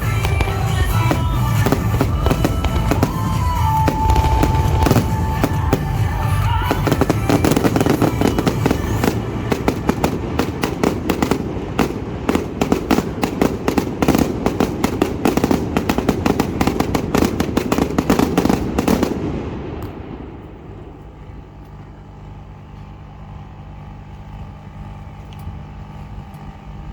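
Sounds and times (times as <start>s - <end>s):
show music: 0.0s - 11.0s
fireworks crackling bursts: 0.0s - 26.2s
low hum: 0.0s - 26.9s.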